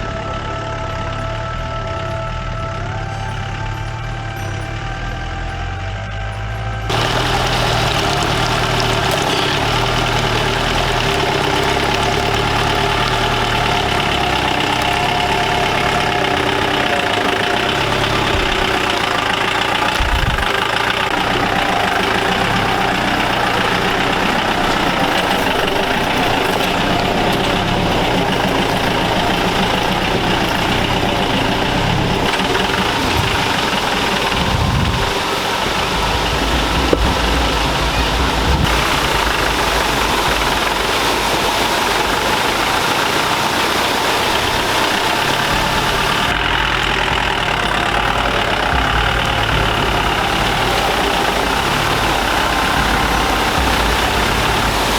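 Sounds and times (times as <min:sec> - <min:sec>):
jeep engine running: 0:00.0 - 0:54.9
knocks from bumpy ride: 0:05.6 - 0:54.9.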